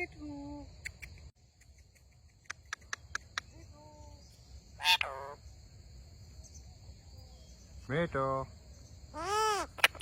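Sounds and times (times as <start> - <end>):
parrot call: 4.8 - 5.4, 9.1 - 10.0
parrot squawk: 4.8 - 5.4, 9.1 - 10.0.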